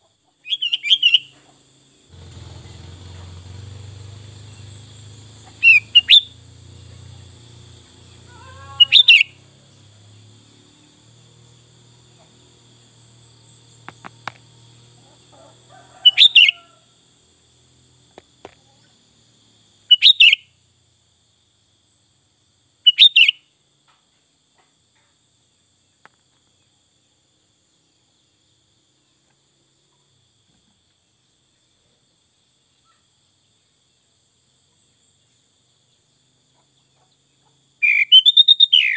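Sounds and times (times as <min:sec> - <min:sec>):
high insect trill: 0:00.0 - 0:38.9
bird song bursts: 0:00.4 - 0:01.4, 0:04.2 - 0:06.5, 0:08.4 - 0:09.4, 0:16.0 - 0:16.7, 0:19.9 - 0:20.5, 0:22.9 - 0:23.4, 0:37.8 - 0:38.9.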